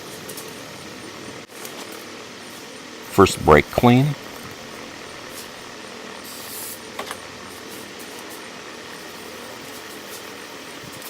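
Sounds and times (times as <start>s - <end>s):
steady background noise: 2.2s - 6.2s.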